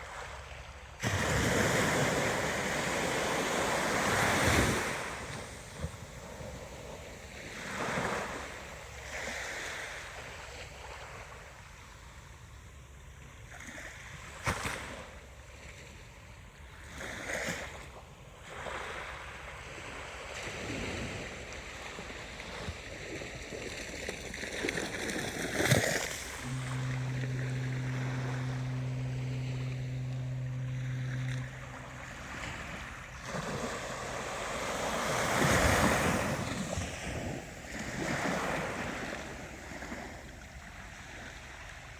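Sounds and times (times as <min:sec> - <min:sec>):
steady low hum: 0:26.3 - 0:36.8
ocean waves breaking: 0:26.4 - 0:36.8.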